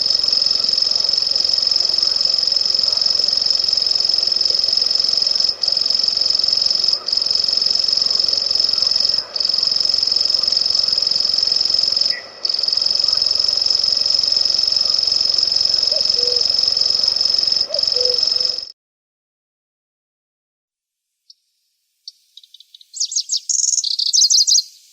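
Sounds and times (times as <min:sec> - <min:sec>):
warbler reeling trill: 0:00.0 - 0:18.7.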